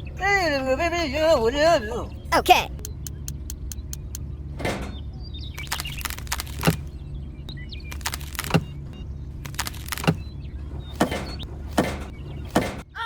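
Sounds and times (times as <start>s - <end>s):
small engine humming: 0.0s - 13.0s
sharp knocks: 9.5s - 10.2s, 10.8s - 12.9s.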